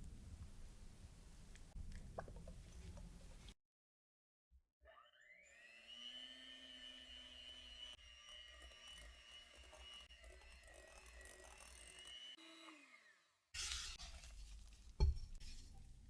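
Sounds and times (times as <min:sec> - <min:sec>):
electric hand mixer running: 0:05.2 - 0:13.3.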